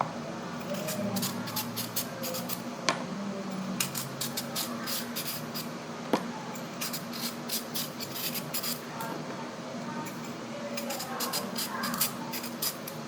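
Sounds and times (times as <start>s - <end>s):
carrot peeler scraping: 0.6s - 2.6s, 3.8s - 5.7s, 6.8s - 8.9s, 10.8s - 13.0s.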